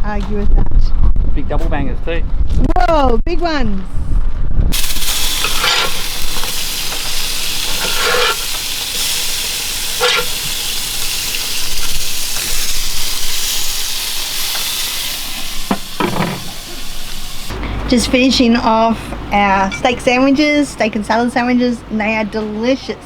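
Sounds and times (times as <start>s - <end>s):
meat sizzling on a grill: 4.7s - 17.5s.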